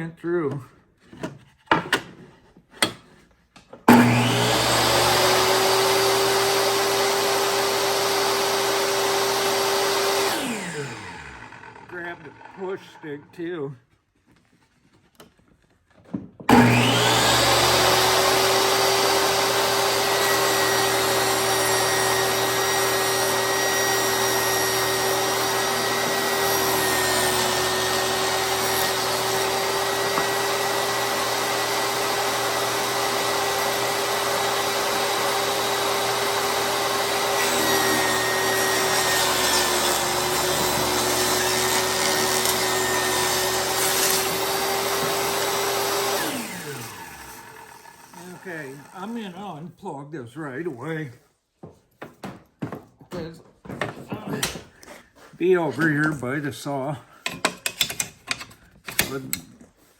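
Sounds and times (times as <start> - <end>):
table saw cutting wood: 3.8 - 13.2, 16.5 - 49.7, 55.5 - 59.9.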